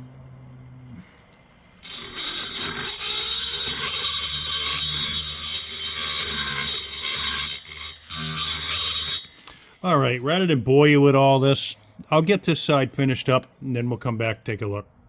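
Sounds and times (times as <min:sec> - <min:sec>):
rotary grinding tool grinding metal: 0:01.6 - 0:09.6.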